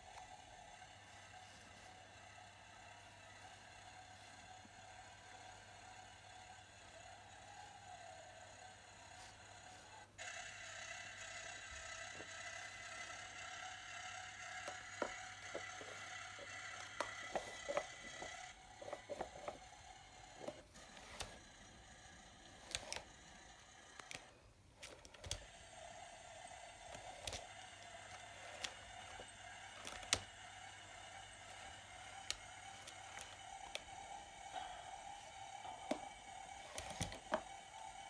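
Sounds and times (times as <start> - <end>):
small electric motor whining: 0.0 - 38.0
plastic clicks and taps: 24.0 - 25.4, 29.8 - 30.3, 35.8 - 37.5.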